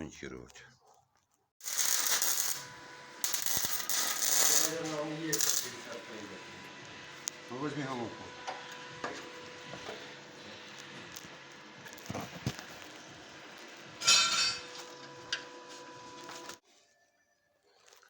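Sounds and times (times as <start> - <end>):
workshop hum: 1.6 - 16.6
metal tools clinking: 14.0 - 14.9.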